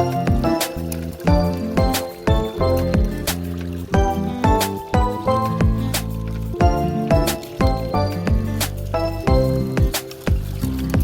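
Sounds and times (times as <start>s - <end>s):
electronic beat music: 0.0s - 11.0s.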